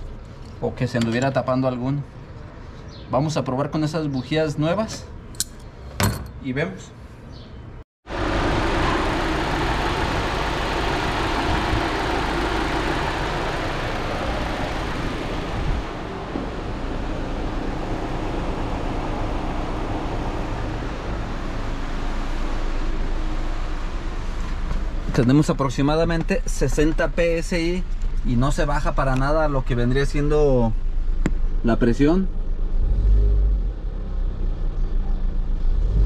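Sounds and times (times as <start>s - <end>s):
car engine idling: 8.1s - 28.4s.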